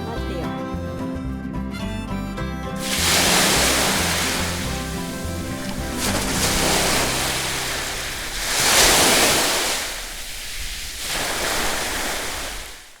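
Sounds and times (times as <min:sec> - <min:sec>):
surf breaking on a beach: 0:02.8 - 0:13.0.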